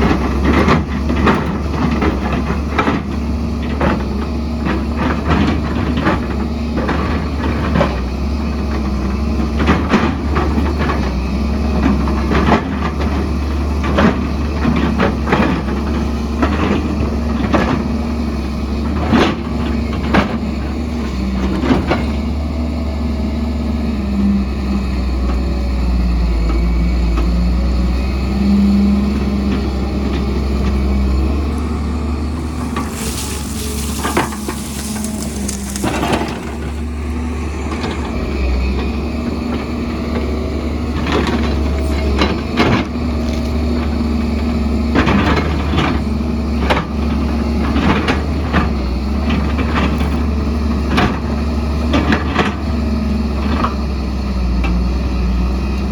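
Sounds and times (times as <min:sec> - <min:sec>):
excavator engine drone: 0:00.0 - 0:55.9
bucket clanking on rock: 0:32.4 - 0:37.2.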